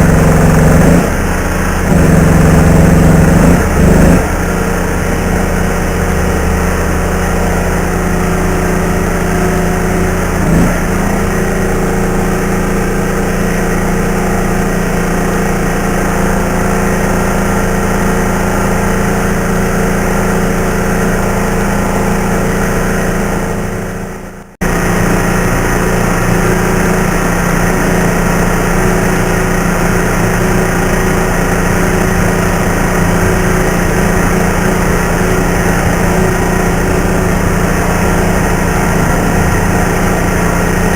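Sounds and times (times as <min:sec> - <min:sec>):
engine running steadily: 0:00.0 - 0:40.9.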